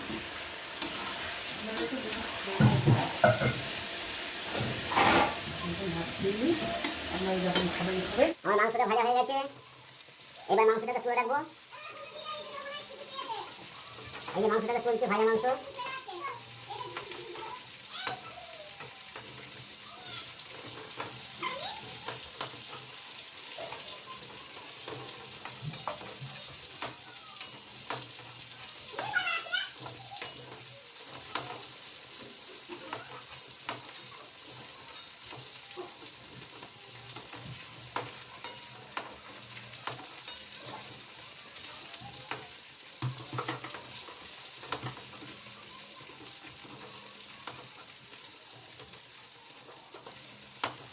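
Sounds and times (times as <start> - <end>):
oil sizzling in a pan: 0.0 - 50.9
metal spatula scraping a pan: 4.3 - 5.5, 19.1 - 41.7.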